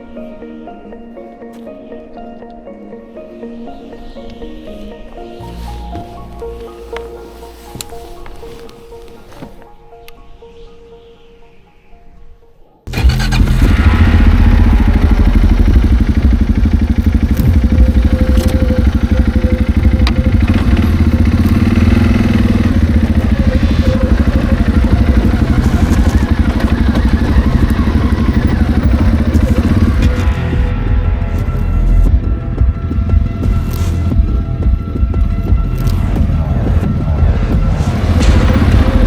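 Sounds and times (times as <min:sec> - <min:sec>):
loud engine throbbing: 0:12.9 - 0:33.8, 0:35.5 - 0:39.0.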